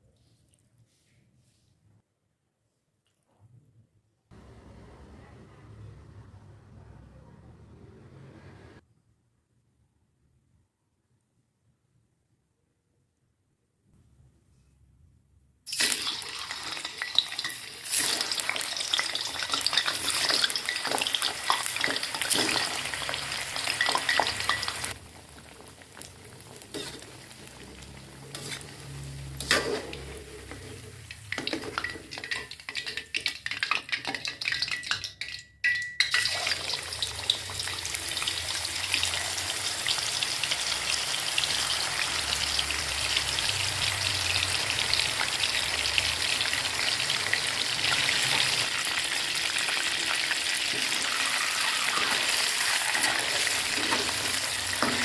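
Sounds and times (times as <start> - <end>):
food sizzling in hot oil: 15.7 - 35.3, 36.0 - 55.0
utensil clattering while stirring: 23.6 - 25.0, 29.4 - 36.4.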